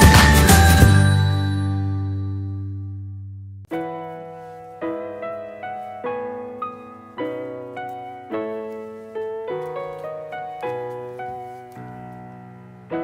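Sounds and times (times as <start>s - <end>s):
gentle piano melody: 3.7s - 13.0s.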